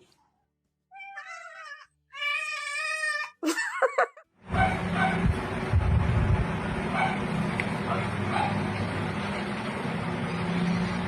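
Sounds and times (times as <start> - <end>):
cat meowing: 0.9 - 3.4.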